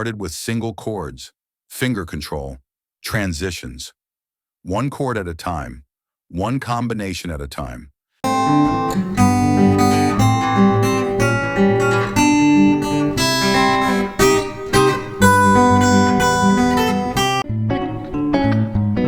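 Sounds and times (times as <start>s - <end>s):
guitar chords ringing: 8.2s - 19.0s.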